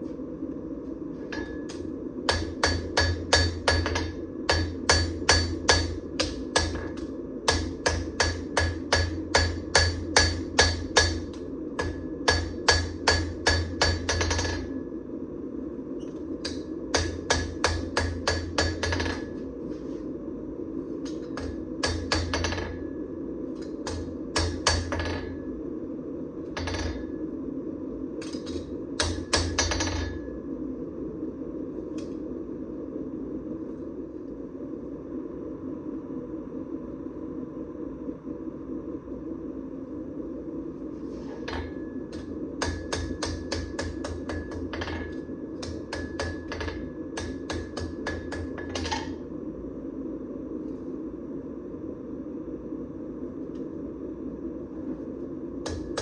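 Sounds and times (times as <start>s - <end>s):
hammer blows ringing on steel: 1.3s - 14.8s, 16.5s - 19.3s, 21.1s - 22.8s, 23.8s - 25.4s, 26.6s - 27.1s, 28.2s - 30.3s, 41.5s - 49.1s.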